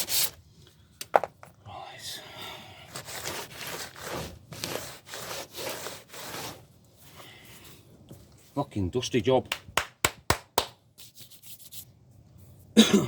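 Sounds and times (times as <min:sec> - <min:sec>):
sandpaper rubbing on metal panel: 0:00.0 - 0:00.4, 0:03.0 - 0:06.7.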